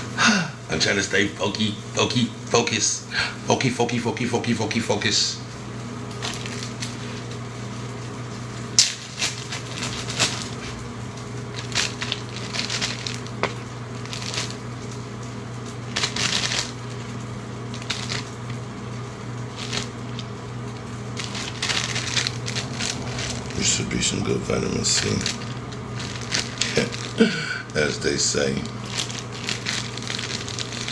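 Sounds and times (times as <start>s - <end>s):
low hum: 19.5s - 30.6s.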